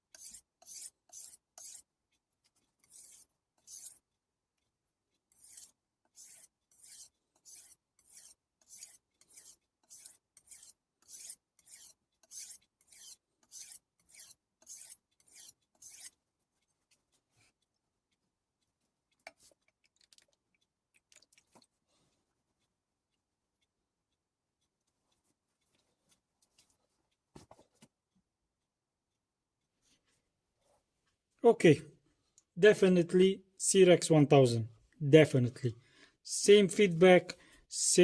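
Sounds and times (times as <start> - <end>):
knife scraping on whetstone: 0.0 - 1.9, 2.8 - 4.0, 5.3 - 16.2.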